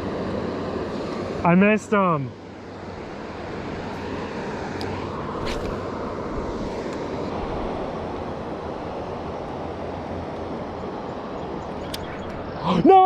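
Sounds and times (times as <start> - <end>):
outdoor rushing noise: 3.7 - 8.1.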